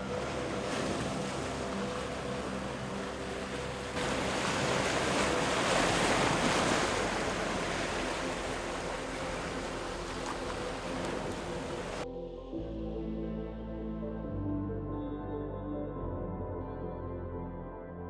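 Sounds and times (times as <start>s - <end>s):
ocean waves on beach: 0.0s - 12.0s
soft ambient music: 0.0s - 18.0s.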